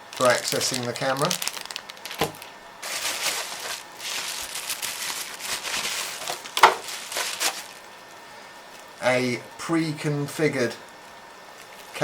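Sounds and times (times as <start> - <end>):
plastic packaging crinkling: 0.0 - 8.0, 11.5 - 12.0.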